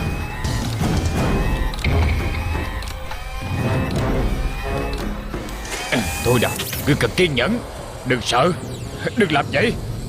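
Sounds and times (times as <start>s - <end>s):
cartoon background music: 0.0s - 7.6s.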